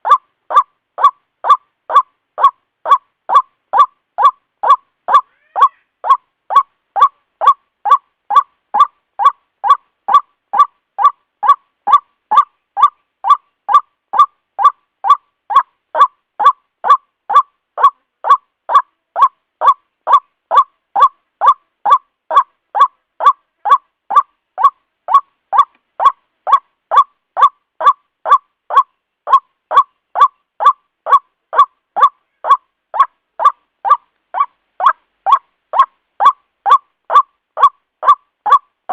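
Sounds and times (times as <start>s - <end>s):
waterhen calling: 0.0s - 38.6s.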